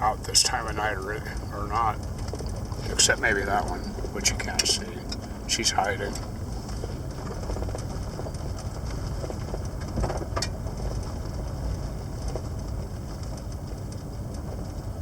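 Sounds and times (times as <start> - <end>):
engine and tyres rumbling: 0.0 - 15.0.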